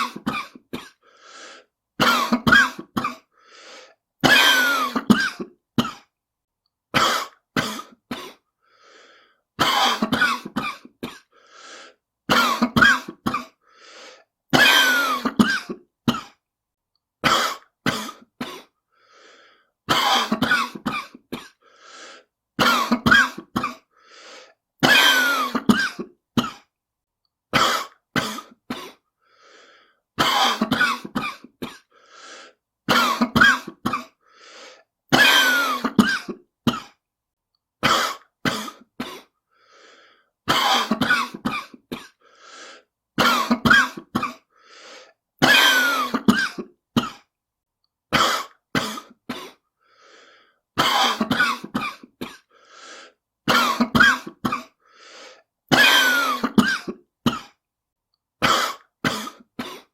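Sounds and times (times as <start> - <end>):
person coughing: 0.0 - 1.1, 2.0 - 3.4, 4.2 - 6.1, 6.9 - 8.5, 9.6 - 11.4, 12.3 - 13.6, 14.5 - 16.4, 17.2 - 18.8, 19.9 - 21.7, 22.6 - 23.9, 24.8 - 26.7, 27.5 - 29.1, 30.2 - 32.0, 32.9 - 34.2, 35.1 - 37.0, 37.8 - 39.4, 40.5 - 42.3, 43.2 - 44.5, 45.4 - 47.3, 48.1 - 49.6, 50.8 - 52.6, 53.5 - 54.8, 55.7 - 57.6, 58.4 - 59.9.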